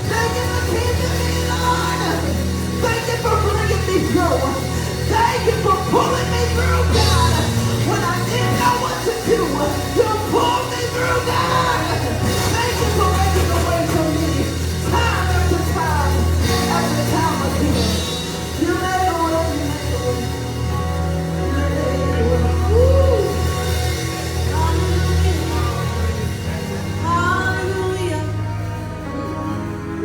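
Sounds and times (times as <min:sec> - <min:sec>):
people singing: 0:00.0 - 0:20.6
bass notes: 0:00.0 - 0:30.0
gospel band playing: 0:00.0 - 0:30.0.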